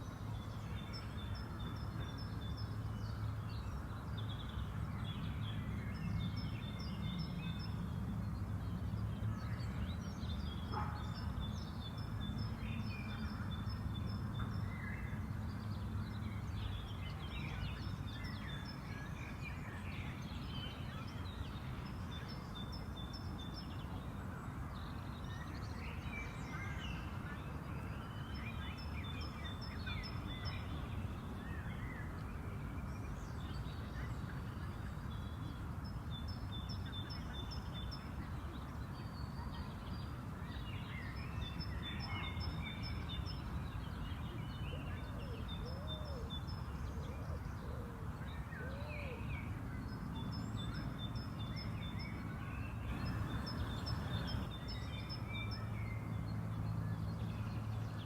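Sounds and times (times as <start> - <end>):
songbirds chirping and trilling: 0.0 - 58.0
low background rumble: 52.9 - 54.7.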